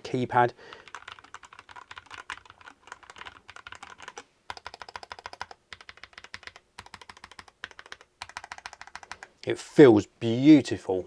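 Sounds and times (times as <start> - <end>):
mechanical keyboard typing: 0.9 - 9.2.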